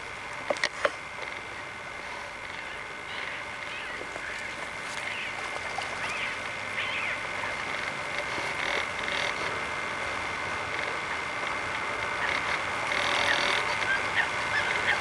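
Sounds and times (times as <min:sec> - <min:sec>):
steady high-pitched whine: 0:00.0 - 0:15.0
birds chirping and calling: 0:02.5 - 0:07.8, 0:12.0 - 0:15.0.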